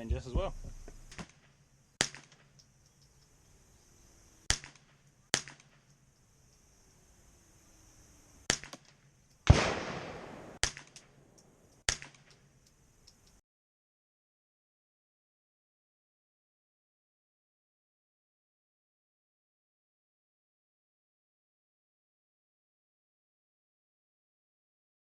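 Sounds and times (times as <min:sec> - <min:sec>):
rifle shots: 0:04.5 - 0:05.8, 0:09.5 - 0:11.2.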